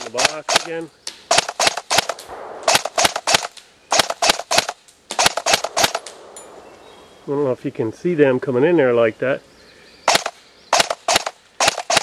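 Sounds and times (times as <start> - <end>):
airsoft gun firing bursts: 0.0 - 6.1, 10.1 - 12.0.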